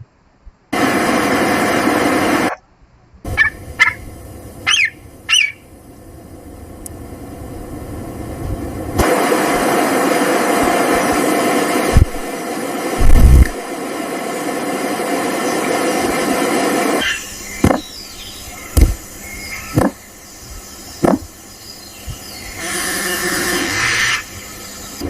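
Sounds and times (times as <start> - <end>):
loud steady noise: 0.7 - 2.5, 3.2 - 25.0
bird squawking: 3.3 - 5.7, 17.0 - 20.2, 22.4 - 24.6.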